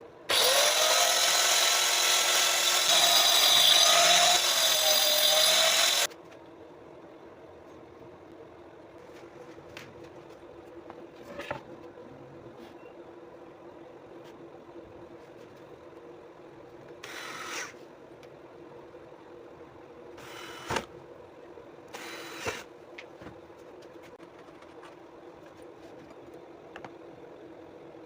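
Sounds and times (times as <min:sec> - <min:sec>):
angle grinder cutting wood: 0:00.3 - 0:06.1
faint steady hum: 0:06.0 - 0:28.0.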